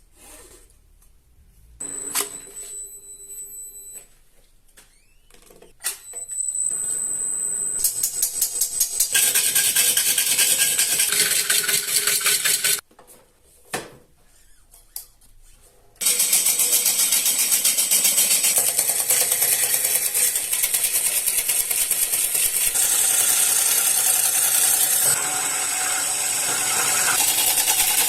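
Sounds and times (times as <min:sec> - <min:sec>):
turning tool cutting wood: 0:08.0 - 0:12.8, 0:16.0 - 0:28.0
wood lathe whining: 0:09.0 - 0:12.8, 0:16.0 - 0:28.0.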